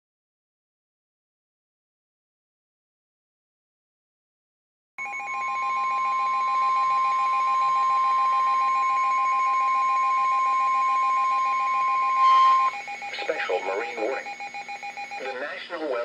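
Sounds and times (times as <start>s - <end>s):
steady high alarm tone: 5.0s - 15.4s
rapidly pulsing beep: 5.0s - 15.6s.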